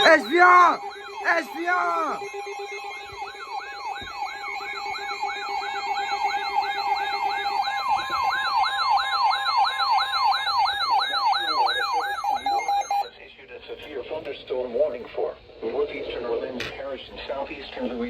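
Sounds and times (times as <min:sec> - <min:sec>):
electronic alert siren sweeping: 0:00.0 - 0:13.1.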